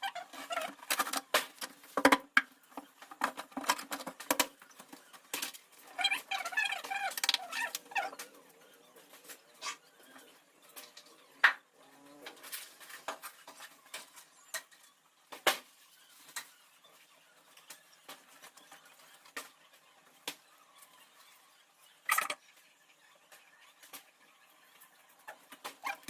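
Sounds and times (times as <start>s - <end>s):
hard objects clicking and knocking: 0.2s - 5.6s.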